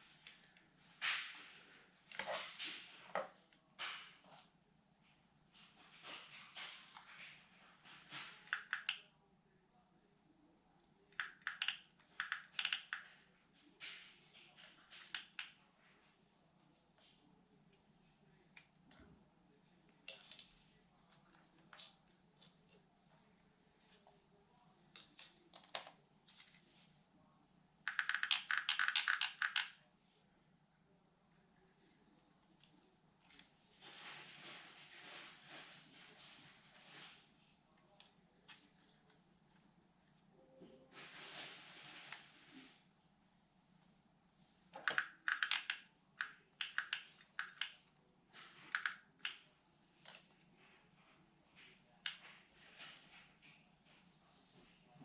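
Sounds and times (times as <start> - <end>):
faint steady hum: 0.0 - 55.0
small hard objects clicking: 27.9 - 29.7, 44.9 - 47.7
clicks: 44.8 - 47.8, 48.7 - 50.2.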